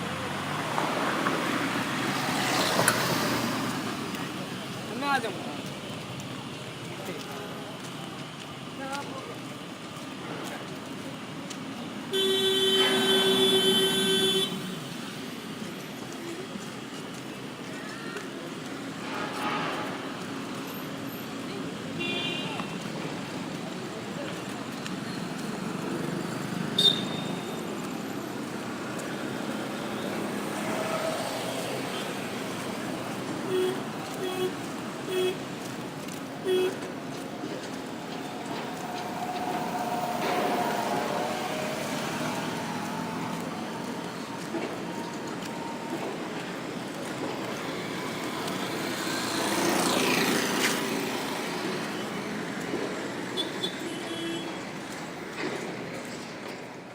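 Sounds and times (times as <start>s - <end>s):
road traffic passing: 0.0s - 56.9s
vehicle horn tooting: 12.1s - 14.9s, 26.8s - 27.6s, 33.5s - 35.4s, 36.4s - 36.9s, 53.4s - 54.5s.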